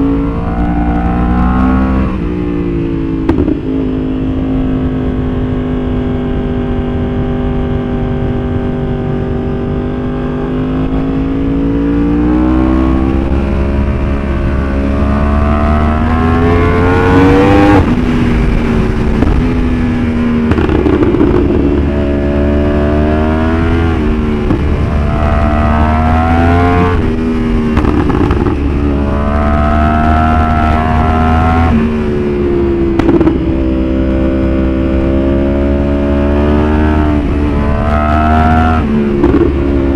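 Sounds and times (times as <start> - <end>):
motorcycle engine revving: 0.0 - 39.9
exhaust pop: 3.2 - 3.9, 14.4 - 32.2, 32.8 - 33.7, 36.6 - 39.9.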